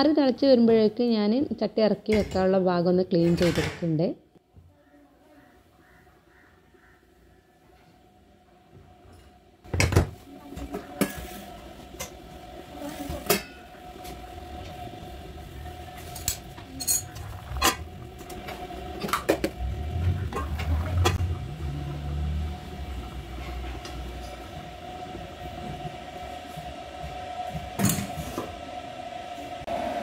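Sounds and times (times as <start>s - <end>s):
low rumble: 13.6s - 27.8s.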